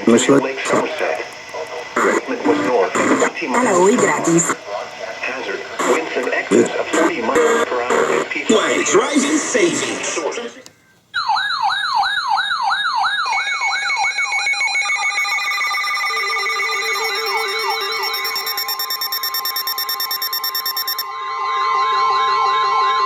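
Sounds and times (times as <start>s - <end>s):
fast electronic siren sweep: 11.2s - 21.1s
warbling siren tones: 11.2s - 21.1s.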